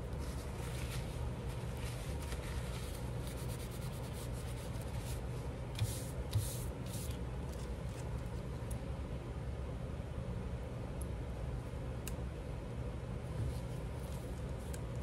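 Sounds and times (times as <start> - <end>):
paper rustling: 0.1 - 5.2.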